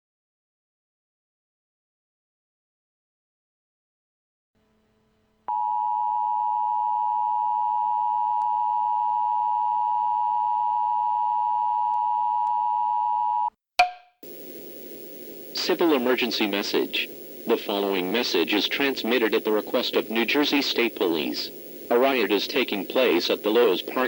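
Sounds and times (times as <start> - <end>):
low hiss: 14.2 - 24.0.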